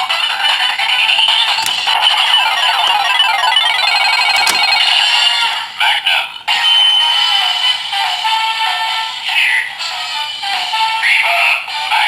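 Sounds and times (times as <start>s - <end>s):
toy belt electronic music: 0.9s - 5.2s.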